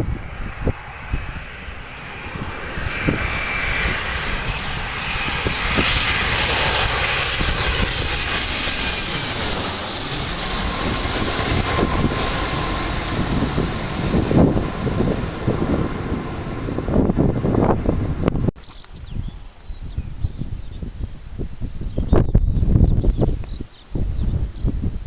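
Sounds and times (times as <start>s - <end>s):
faint jet whine sliding in pitch: 0.0s - 18.3s
jet airliner engines passing: 0.0s - 18.5s.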